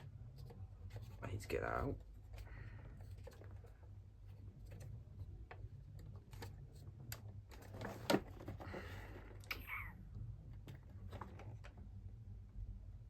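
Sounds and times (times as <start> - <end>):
plastic parts clicking and knocking: 4.6 - 8.8.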